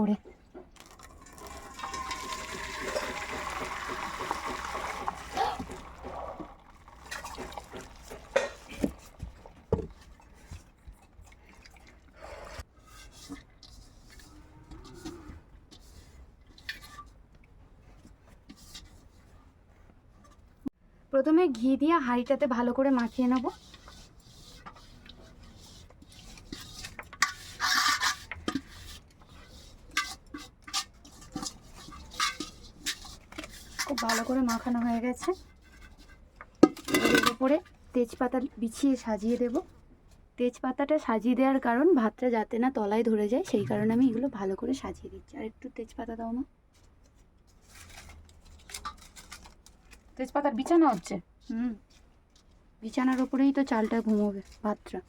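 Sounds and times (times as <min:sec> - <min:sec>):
water dripping and trickling: 0:00.8 - 0:12.2
scraping inside cooking pot: 0:12.6 - 0:17.2, 0:23.0 - 0:37.5.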